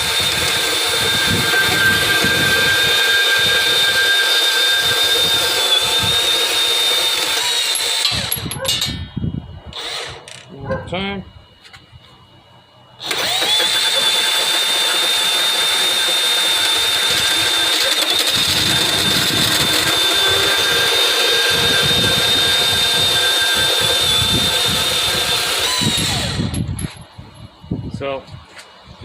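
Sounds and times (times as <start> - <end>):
blade grinding through cut: 0.0 - 8.9, 9.8 - 10.4, 13.0 - 26.5
band saw whining: 0.0 - 29.0.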